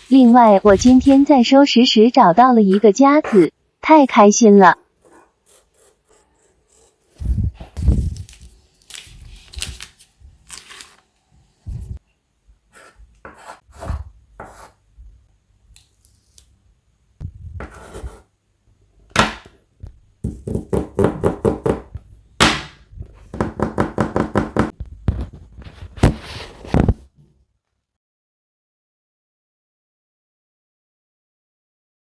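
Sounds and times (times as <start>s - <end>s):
paper taps rustles and scrapes: 24.8s - 27.1s.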